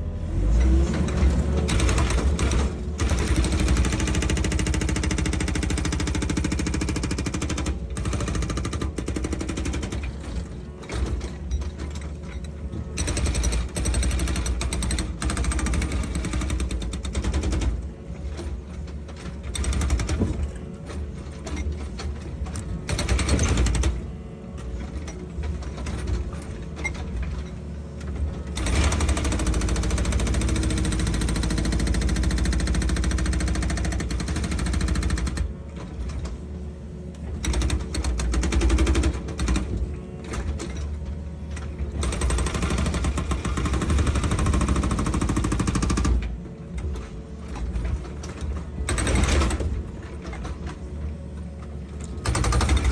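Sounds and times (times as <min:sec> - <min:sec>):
excavator hammering rattle: 0:00.6 - 0:36.4, 0:37.2 - 0:51.1, 0:51.8 - 0:52.9.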